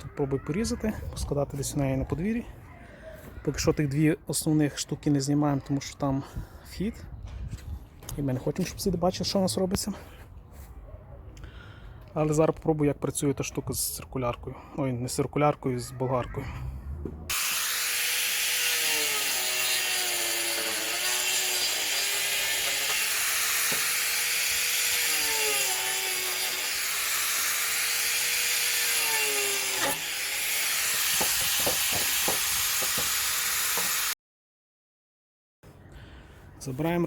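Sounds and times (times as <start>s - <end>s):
angle grinder sawing wood: 17.3s - 34.2s
knocks: 31.2s - 33.2s.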